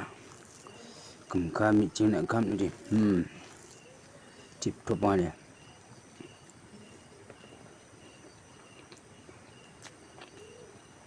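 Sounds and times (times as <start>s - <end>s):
insect chirping: 0.0s - 11.0s.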